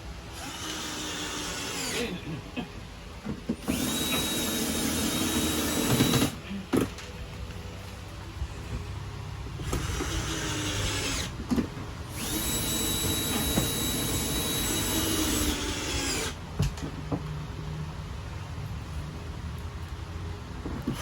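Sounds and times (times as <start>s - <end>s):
small electric motor whining: 3.6s - 6.4s, 9.6s - 11.3s, 12.1s - 16.4s.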